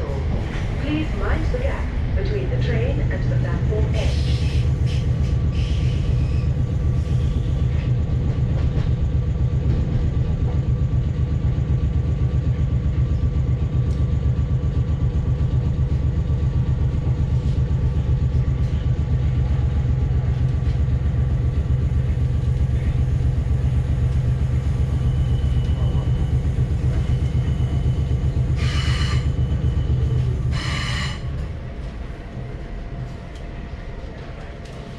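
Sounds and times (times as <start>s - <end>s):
train rumble inside carriage: 0.0s - 34.9s.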